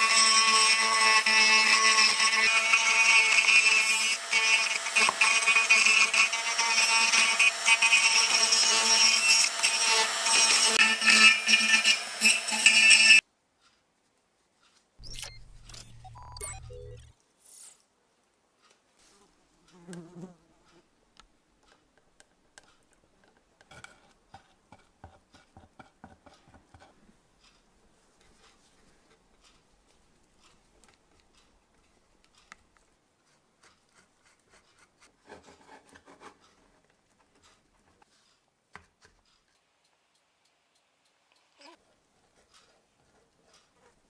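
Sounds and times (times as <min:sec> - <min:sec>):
faint clicks and taps: 0:21.1 - 0:33.0.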